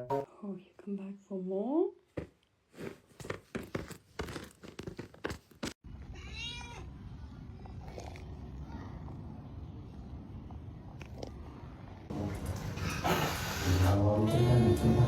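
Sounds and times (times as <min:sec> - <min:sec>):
cat meowing: 0:06.1 - 0:06.9.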